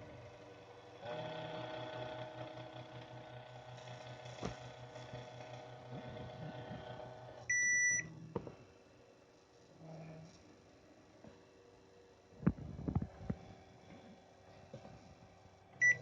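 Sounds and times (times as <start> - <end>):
small motor humming and pulsing: 0.0 - 7.5.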